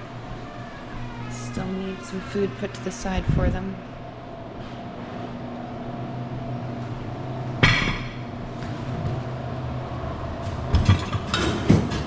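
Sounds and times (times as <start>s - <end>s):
steady mechanical hum: 0.0s - 12.0s
kitchenware clanking: 10.7s - 12.0s.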